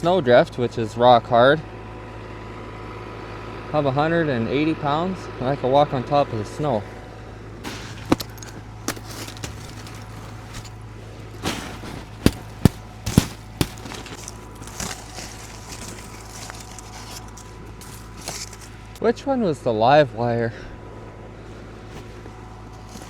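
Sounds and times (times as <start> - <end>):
steady low hum: 6.3 - 19.0
crusted snow cracking: 7.6 - 19.0, 21.5 - 23.0.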